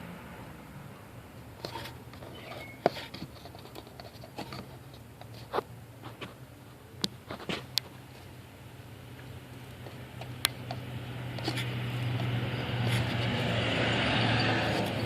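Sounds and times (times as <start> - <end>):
light clicks taps and scrapes: 1.6 - 6.4, 9.8 - 13.4.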